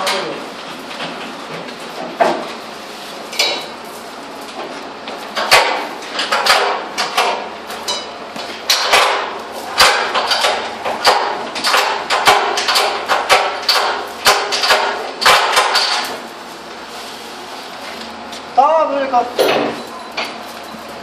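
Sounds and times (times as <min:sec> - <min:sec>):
steel firebox clanking: 0:05.4 - 0:16.3.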